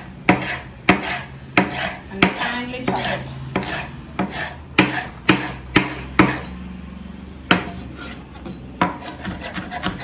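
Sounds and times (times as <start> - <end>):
knife chopping on cutting board: 0.0 - 6.6, 8.8 - 10.0.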